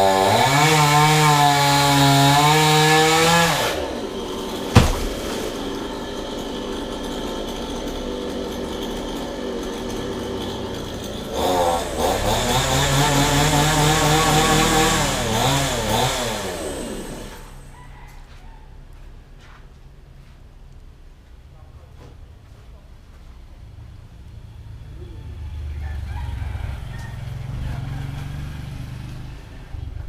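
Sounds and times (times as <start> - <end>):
chainsaw revving and idling: 0.0 - 17.6
sharp knock: 4.7 - 5.6.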